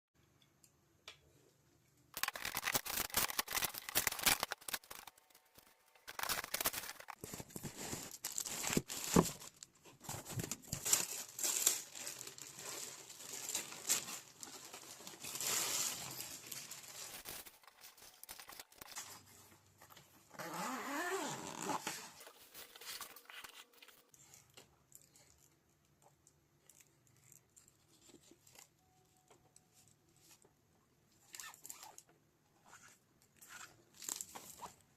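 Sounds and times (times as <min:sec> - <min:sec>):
packaging tearing and crinkling: 0:02.2 - 0:19.2
rustling: 0:02.2 - 0:20.1.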